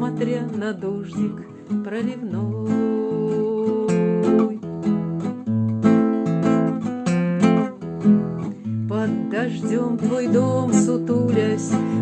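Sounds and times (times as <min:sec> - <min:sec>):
person singing: 0:00.0 - 0:04.6, 0:08.8 - 0:12.0
acoustic guitar strumming: 0:00.0 - 0:12.0.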